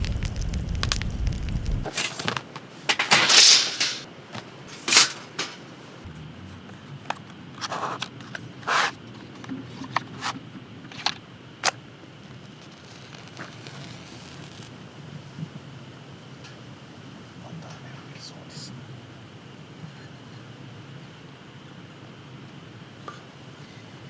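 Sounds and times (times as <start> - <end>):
low rumble: 0.0 - 1.9
steel parts clinking and scraping: 1.8 - 5.8.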